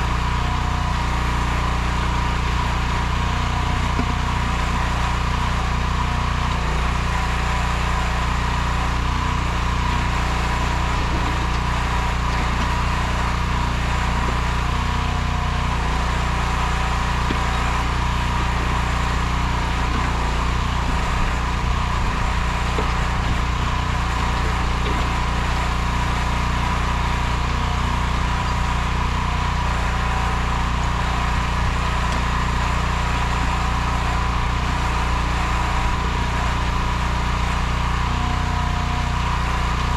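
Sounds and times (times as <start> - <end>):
small engine running steadily: 0.0 - 39.9.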